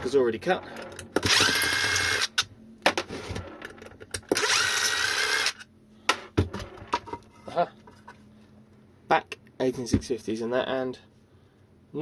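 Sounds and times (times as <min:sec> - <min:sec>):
electric screwdriver whirring: 0:01.2 - 0:02.4, 0:04.3 - 0:05.7.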